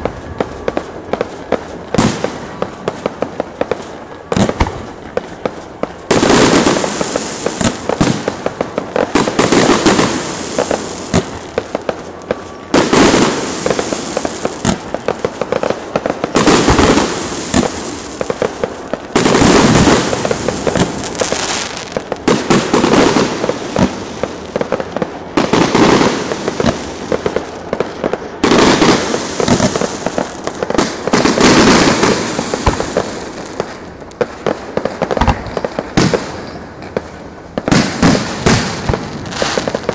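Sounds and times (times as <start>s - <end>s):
fireworks crackling in rapid volleys: 0.0s - 39.9s.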